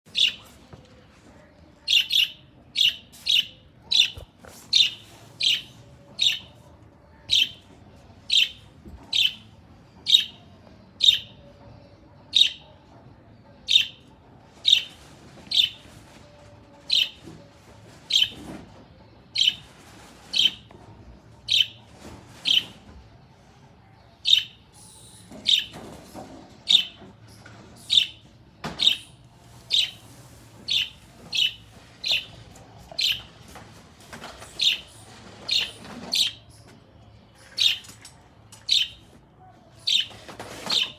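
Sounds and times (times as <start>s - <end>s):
parrot chirping: 0.1s - 0.5s, 1.9s - 6.6s, 7.3s - 7.6s, 8.3s - 9.5s, 10.1s - 10.4s, 26.7s - 27.0s, 28.8s - 33.3s, 34.6s - 36.5s, 38.7s - 39.0s.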